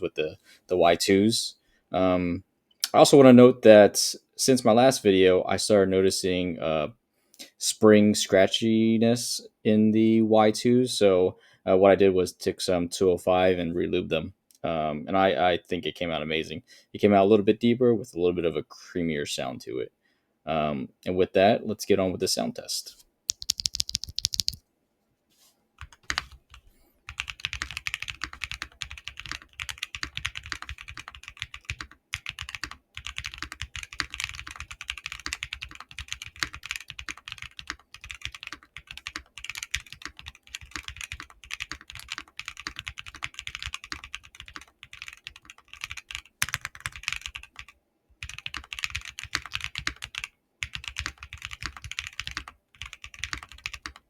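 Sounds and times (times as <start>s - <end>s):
typing on mechanical keyboard: 23.3s - 24.6s, 25.8s - 54.0s.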